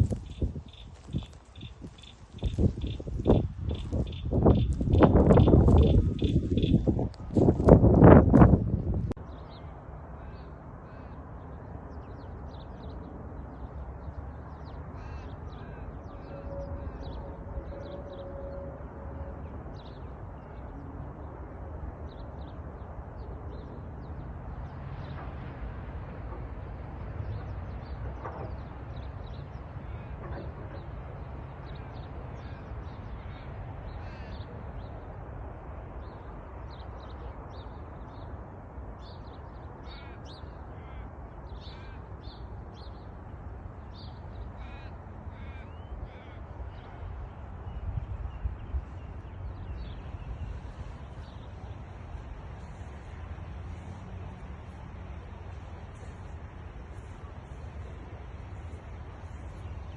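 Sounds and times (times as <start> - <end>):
birds chirping and calling: 0.0 - 7.0.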